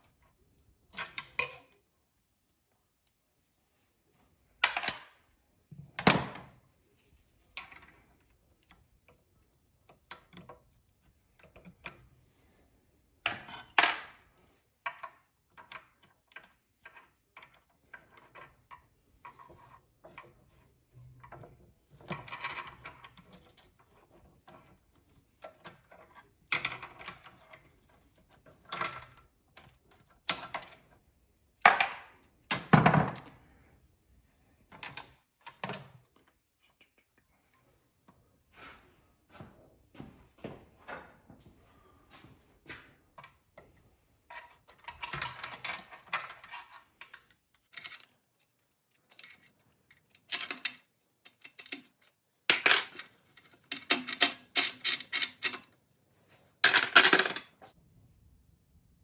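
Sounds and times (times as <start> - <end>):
tools and metal parts clanking: 13.3 - 30.9, 44.3 - 55.8, 56.6 - 57.6.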